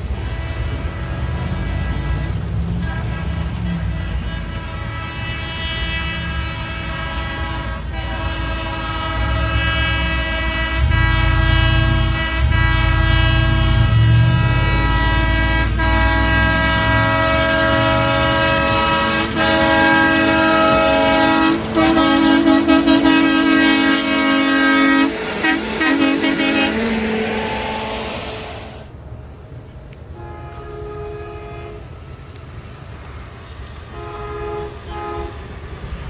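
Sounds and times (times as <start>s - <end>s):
air horns blowing chords: 0.0s - 28.9s, 33.9s - 35.9s.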